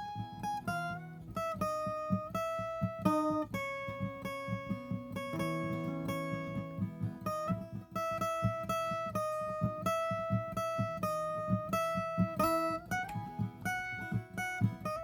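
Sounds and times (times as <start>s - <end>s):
guitar slow solo melody: 0.0s - 15.0s
plucked low accompaniment: 0.0s - 15.0s.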